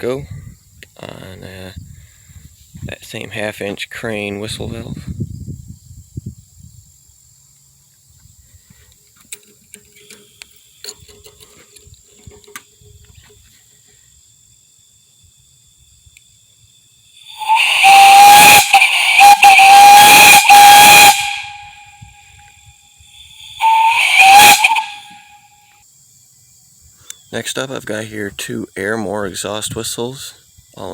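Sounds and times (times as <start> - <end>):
steam whistle blasts: 17.2 - 25.6.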